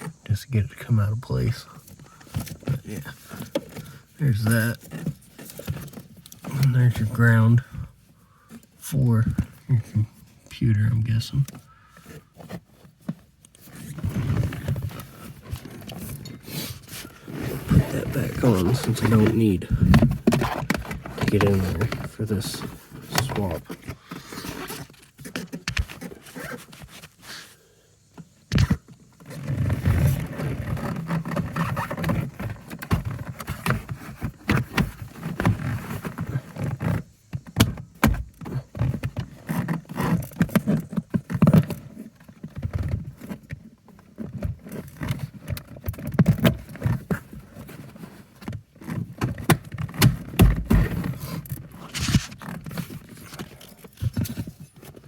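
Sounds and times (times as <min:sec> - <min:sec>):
low rumbling handling noise: 0:11.2 - 0:26.5
hand tools knocking and scraping: 0:11.5 - 0:27.5, 0:48.8 - 0:55.0.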